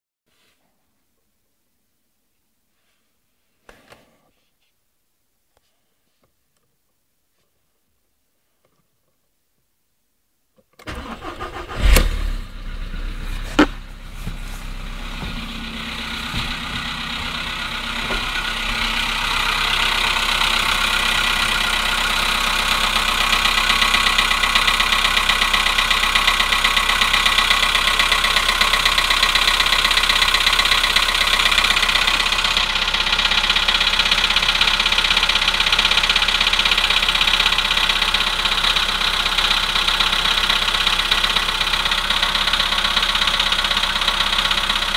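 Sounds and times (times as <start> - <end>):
car engine idling: 10.9 - 44.9
rapid metallic engine knocking: 15.0 - 38.3.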